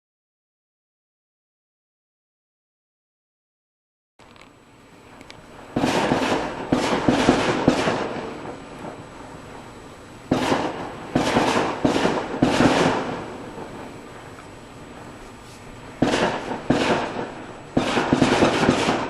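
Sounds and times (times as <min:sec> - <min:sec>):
fireworks bangs echoing: 0:05.6 - 0:09.6, 0:10.3 - 0:19.0.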